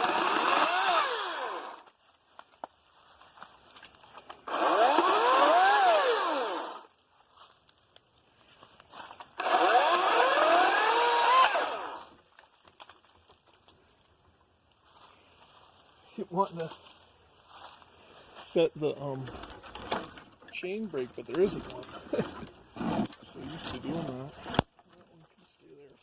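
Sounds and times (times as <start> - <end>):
chainsaw motor whining: 0.0 - 1.9, 4.4 - 6.9, 9.3 - 12.2, 21.1 - 24.7.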